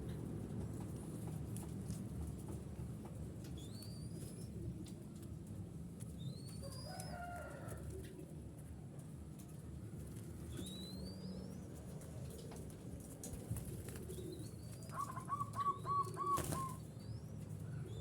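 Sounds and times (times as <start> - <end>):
birds whistling: 14.3 - 17.3.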